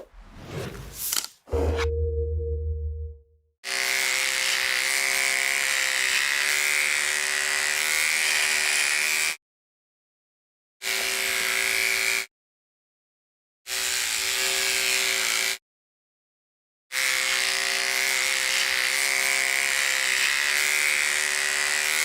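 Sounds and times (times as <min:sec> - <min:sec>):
electric hair clipper buzzing: 0:03.7 - 0:09.4, 0:10.8 - 0:12.2, 0:16.9 - 0:22.0.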